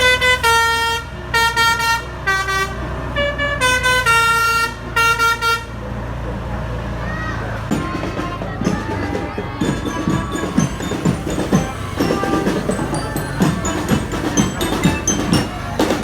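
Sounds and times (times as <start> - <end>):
bell-like mallet notes: 7.7 - 16.0
drum strokes: 7.7 - 16.0.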